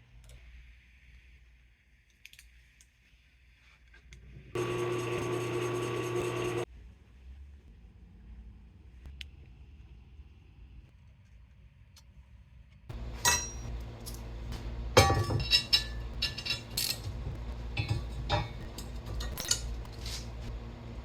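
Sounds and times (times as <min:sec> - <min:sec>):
steady low hum: 0:12.9 - 0:21.0
hard objects clinking: 0:15.0 - 0:20.4.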